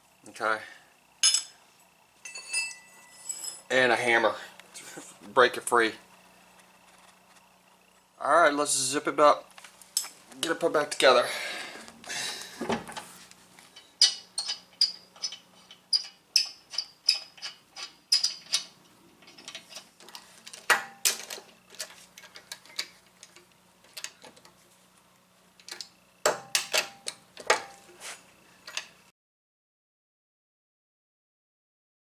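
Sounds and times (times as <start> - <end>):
faint low hum: 0.0 - 29.1
hand tools clicking on metal: 13.8 - 24.5, 28.6 - 29.0.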